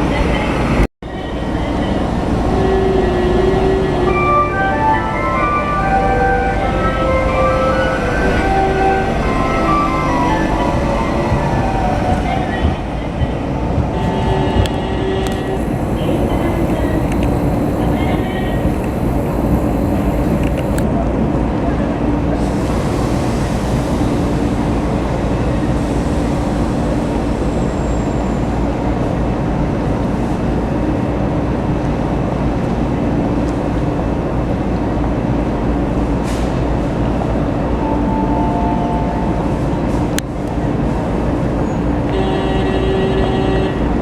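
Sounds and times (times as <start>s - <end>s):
trams rumbling: 0.0s - 44.0s
low motor hum: 7.2s - 13.4s, 14.7s - 20.9s.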